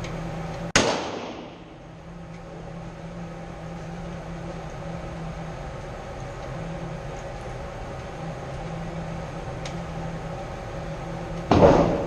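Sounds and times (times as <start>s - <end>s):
ventilation fans humming: 0.0s - 12.0s
handgun shot echo: 0.8s - 1.6s.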